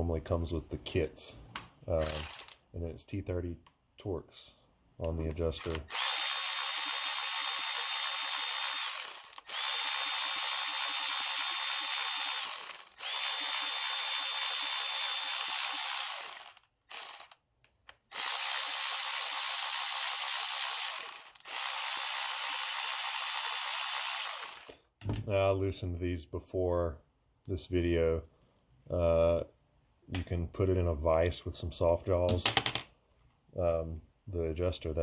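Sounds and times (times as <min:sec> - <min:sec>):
power driver whirring: 0:05.6 - 0:24.8.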